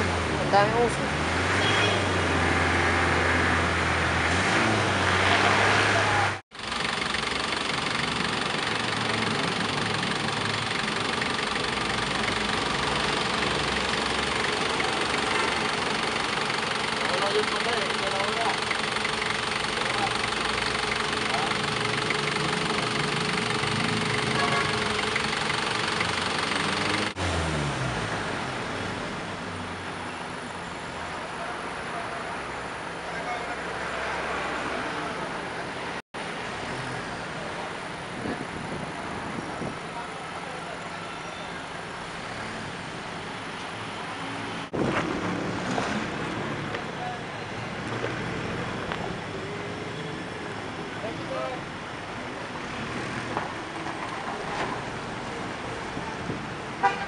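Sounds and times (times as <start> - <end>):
diesel engine humming: 0.0 - 57.0
engine clattering idle: 6.5 - 27.2.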